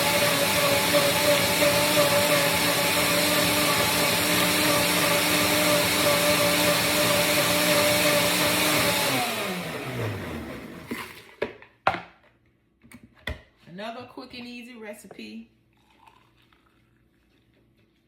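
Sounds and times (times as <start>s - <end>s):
blender running: 0.0s - 11.3s.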